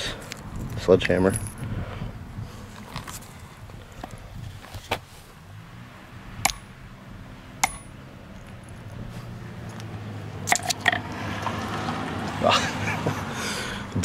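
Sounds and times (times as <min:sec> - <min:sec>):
sledgehammer striking metal flashlight: 0:06.4 - 0:06.7, 0:07.6 - 0:08.0.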